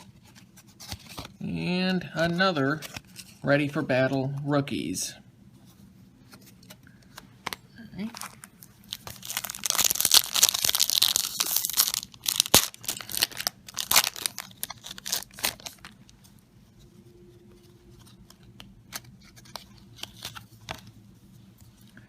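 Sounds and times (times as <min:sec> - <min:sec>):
wrapper tearing and crinkling: 0:08.2 - 0:16.0.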